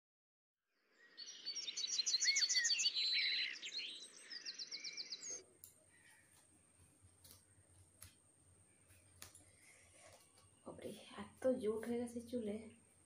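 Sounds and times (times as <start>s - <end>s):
birds chirping and trilling: 0.8s - 6.4s.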